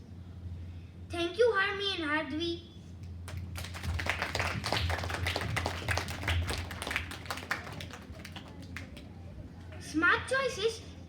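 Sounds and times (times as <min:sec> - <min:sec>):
children applauding: 0:03.3 - 0:09.1.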